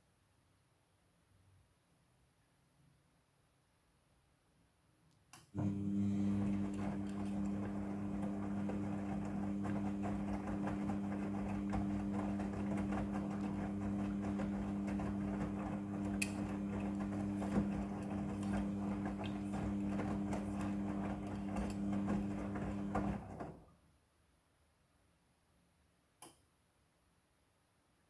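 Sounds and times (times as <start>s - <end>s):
washing machine motor hum: 5.6s - 23.7s.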